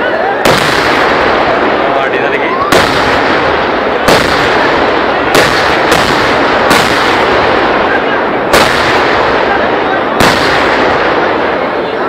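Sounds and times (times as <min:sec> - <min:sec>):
firecrackers crackling: 0:00.0 - 0:12.0
heavy firework bangs: 0:00.0 - 0:12.0.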